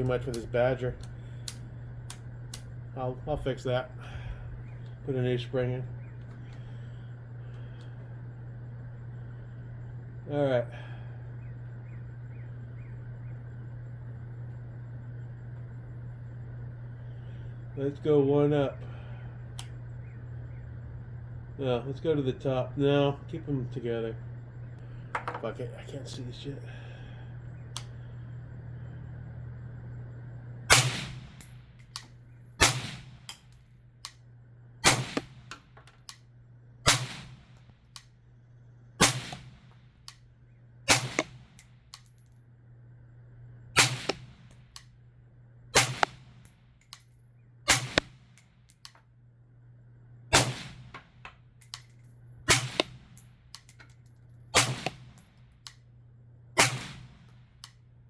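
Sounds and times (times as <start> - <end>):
steady low hum: 0.0 - 58.0
suppressed rifle shots: 30.7 - 31.5, 32.6 - 33.3, 34.8 - 35.5, 36.8 - 37.6, 39.0 - 39.7, 40.9 - 41.7, 43.8 - 44.6, 45.8 - 46.5, 47.7 - 48.2, 50.3 - 50.9, 52.5 - 53.2, 54.5 - 55.2, 56.6 - 57.4.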